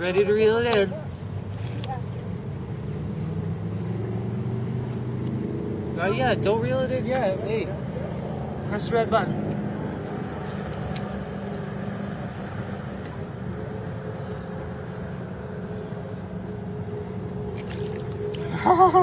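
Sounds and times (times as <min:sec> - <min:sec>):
engine rumbling: 0:00.0 - 0:19.0
child's voice: 0:01.7 - 0:02.2.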